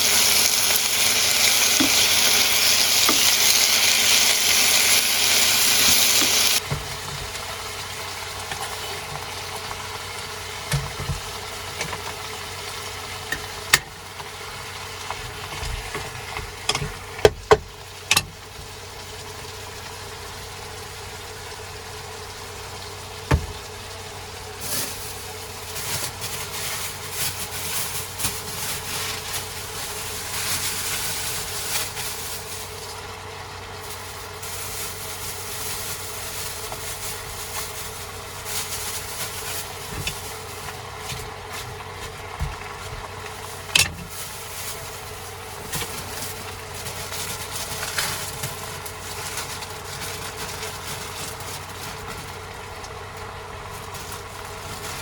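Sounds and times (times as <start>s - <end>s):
motor hum: 0.0s - 26.5s
rustling and handling noises: 24.6s - 55.0s.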